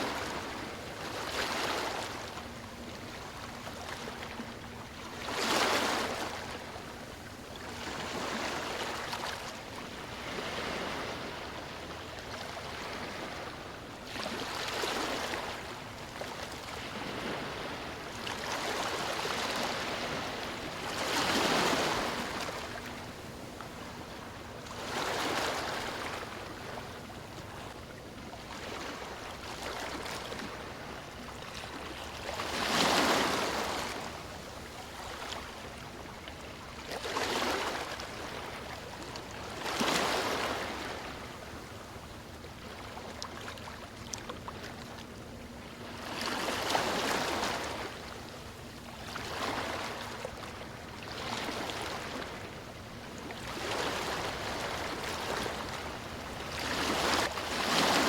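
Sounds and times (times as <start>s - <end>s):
sea waves breaking on beach: 0.0s - 7.0s, 7.7s - 27.0s, 28.4s - 35.6s, 49.0s - 52.7s, 53.3s - 58.0s.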